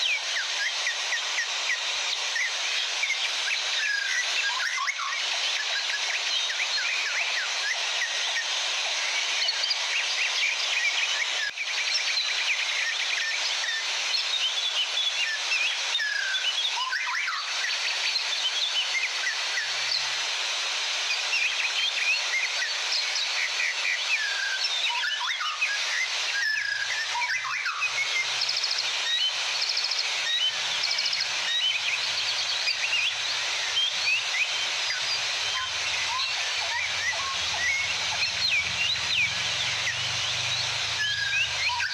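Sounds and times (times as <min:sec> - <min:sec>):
birds singing and chirping: 0:26.4 - 0:41.9.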